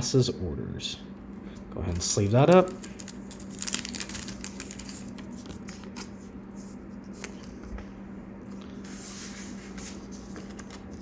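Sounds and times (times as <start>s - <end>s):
plastic sleeve rustling: 1.9s - 6.4s.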